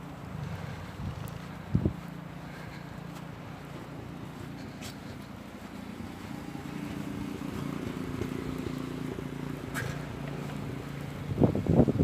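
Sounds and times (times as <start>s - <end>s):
engine humming: 0.0s - 12.0s.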